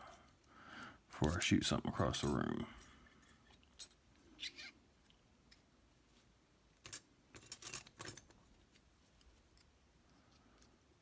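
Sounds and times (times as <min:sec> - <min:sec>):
light metallic clicks and clinks: 0:01.2 - 0:04.0, 0:06.8 - 0:08.4.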